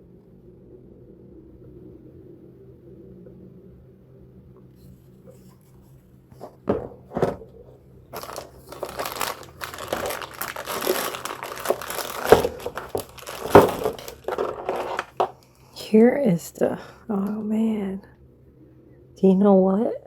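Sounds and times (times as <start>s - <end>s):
packaging crinkling: 8.1s - 15.4s.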